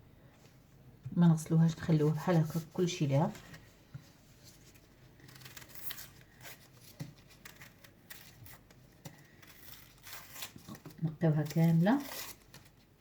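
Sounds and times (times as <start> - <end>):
onion skins crinkling and tearing: 4.6 - 12.9.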